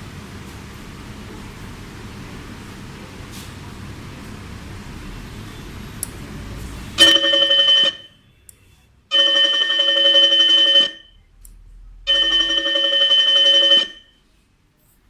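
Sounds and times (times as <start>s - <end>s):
electronic gong bell ringing: 7.0s - 8.1s, 9.1s - 11.1s, 12.1s - 14.2s.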